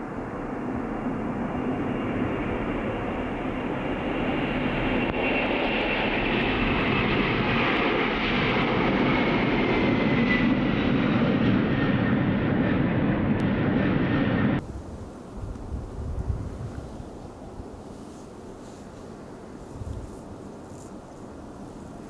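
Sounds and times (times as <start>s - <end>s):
aircraft engine roaring: 0.0s - 17.8s.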